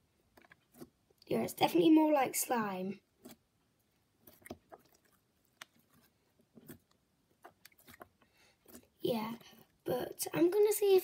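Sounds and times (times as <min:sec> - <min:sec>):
putty sticky clicks and squelches: 0:03.2 - 0:03.5, 0:04.2 - 0:08.9.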